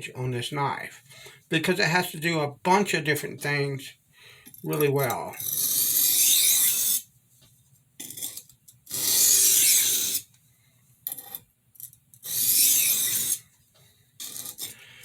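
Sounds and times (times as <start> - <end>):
knife scraping on whetstone: 9.0 - 10.2, 12.2 - 13.4.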